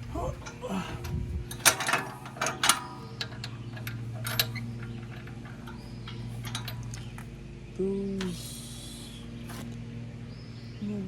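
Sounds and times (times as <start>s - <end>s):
metal clicks and clanks: 0.0s - 7.3s
steady low hum: 0.0s - 11.0s.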